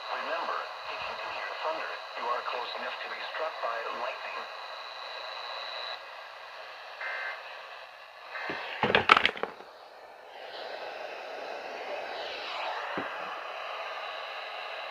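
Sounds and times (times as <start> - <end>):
radio receiver hiss: 0.0 - 14.9.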